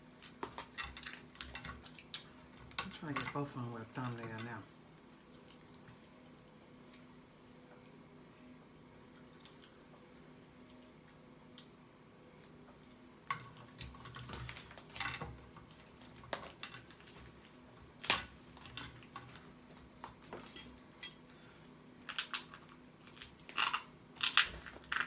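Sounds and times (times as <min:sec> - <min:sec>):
crab and lobster shells cracking: 0:22.0 - 0:25.0.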